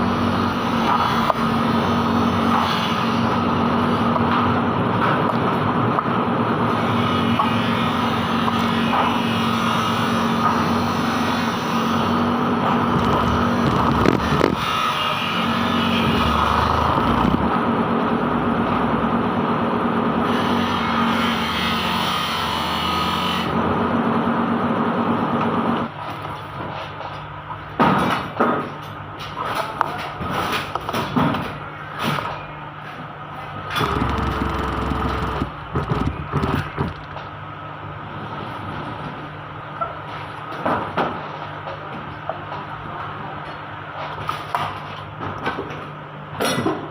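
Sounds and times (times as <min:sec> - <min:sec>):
engine running: 0:11.9 - 0:14.7, 0:15.9 - 0:19.3, 0:33.6 - 0:37.3
mechanical knocking and clatter: 0:12.4 - 0:14.9, 0:15.8 - 0:17.6, 0:33.6 - 0:37.4
steady low hum: 0:33.2 - 0:38.5
knocks: 0:33.8 - 0:37.2.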